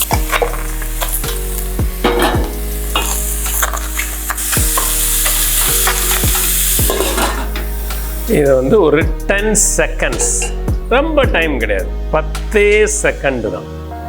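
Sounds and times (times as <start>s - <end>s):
chicken sizzling in a pan: 0.0s - 10.6s
utensil knocking against pan: 2.0s - 3.2s.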